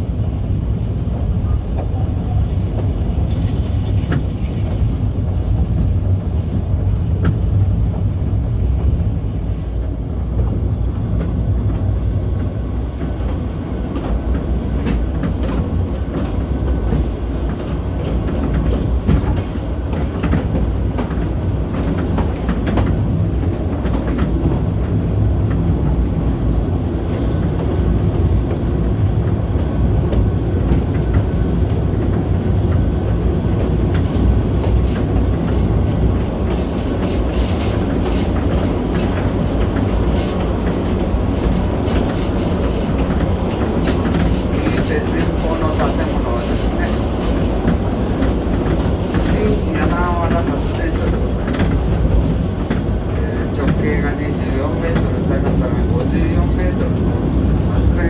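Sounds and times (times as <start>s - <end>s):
high wheel squeal: 0.0s - 5.3s
train wheels rumbling on rail: 0.0s - 58.0s
wheel clacks and knocks: 29.6s - 54.1s.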